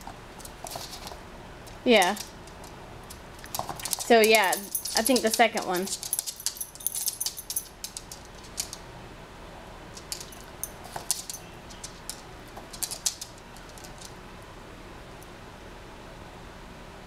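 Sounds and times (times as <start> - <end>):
low steady hum: 0.0 - 17.0
pet collar jingling: 1.9 - 2.4, 3.4 - 8.8, 10.0 - 14.1.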